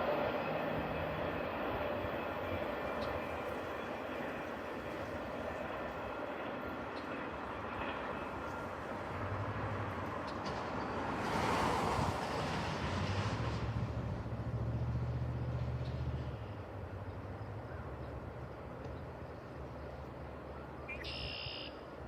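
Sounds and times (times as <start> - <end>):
freight train rolling rush: 0.0 - 20.9
low engine hum: 10.6 - 20.2.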